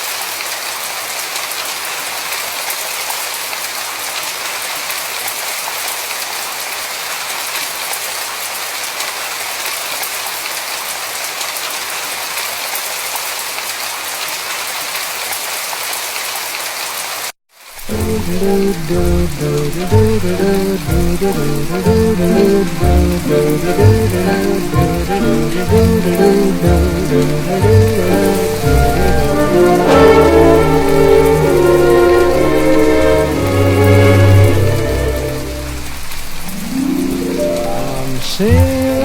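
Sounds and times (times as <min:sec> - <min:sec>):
steady rain falling: 0:00.0 - 0:39.0.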